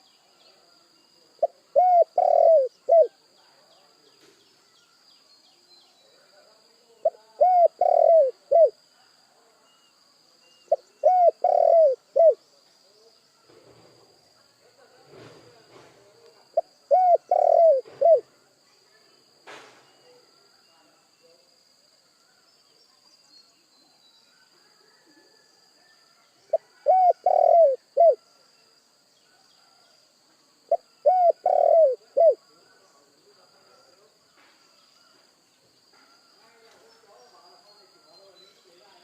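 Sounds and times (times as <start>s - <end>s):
dove cooing: 1.4s - 3.2s, 7.0s - 8.8s, 10.7s - 12.4s, 16.6s - 18.3s, 26.5s - 28.2s, 30.7s - 32.5s.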